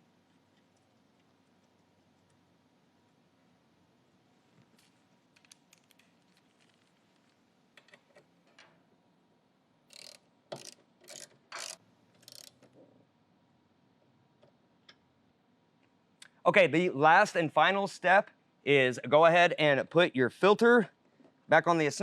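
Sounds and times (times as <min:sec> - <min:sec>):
ratchet wrench clicking: 0:09.9 - 0:12.6.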